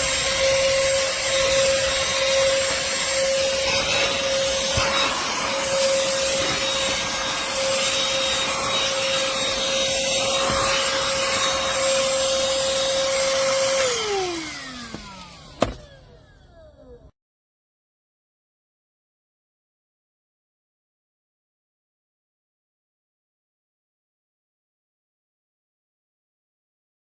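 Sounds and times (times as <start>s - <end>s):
handheld vacuum whining: 0.0s - 17.1s.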